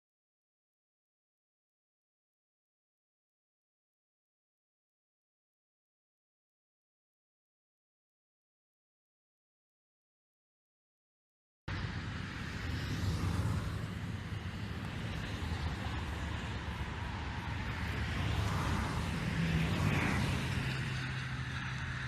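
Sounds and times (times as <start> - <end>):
outdoor noise: 11.7 - 22.0.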